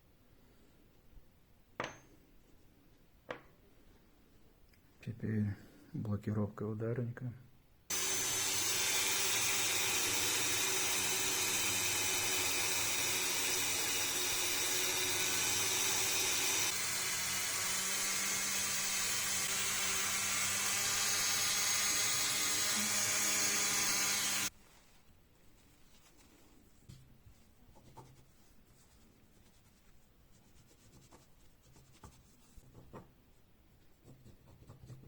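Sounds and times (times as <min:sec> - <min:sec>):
rotary tool buffing metal: 0:07.9 - 0:24.5.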